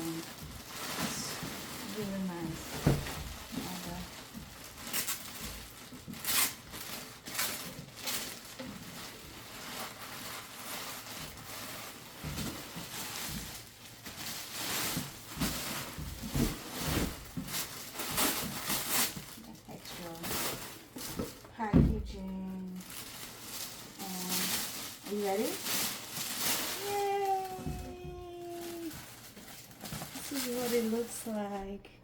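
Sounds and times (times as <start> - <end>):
packaging wrapping crinkling: 0.0 - 31.8.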